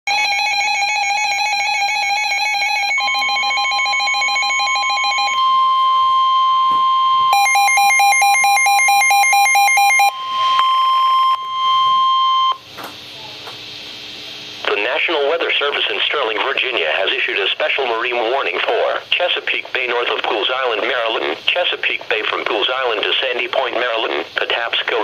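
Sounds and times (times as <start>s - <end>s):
high steady alarm tone: 0.1s - 12.7s.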